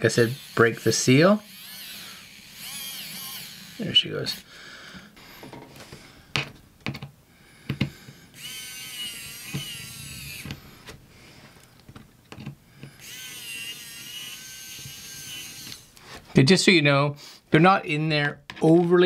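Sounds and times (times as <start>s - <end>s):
electric screwdriver motor whining: 0.2s - 4.4s, 8.4s - 10.8s, 12.9s - 16.0s.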